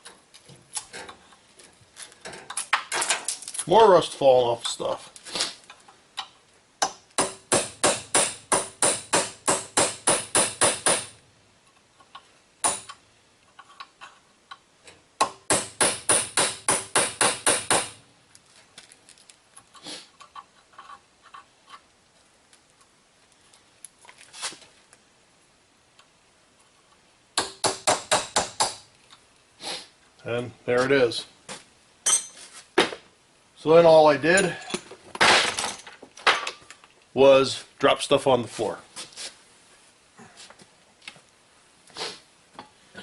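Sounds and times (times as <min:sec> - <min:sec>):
hammer on metal: 0:07.2 - 0:11.1, 0:15.2 - 0:18.0.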